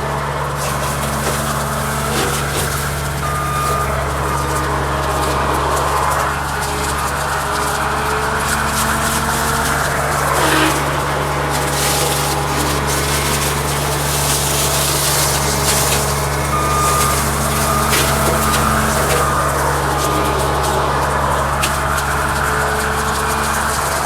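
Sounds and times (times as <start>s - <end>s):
loader diesel engine under load: 0.0s - 24.0s
short beeps: 3.2s - 4.0s, 16.4s - 19.6s.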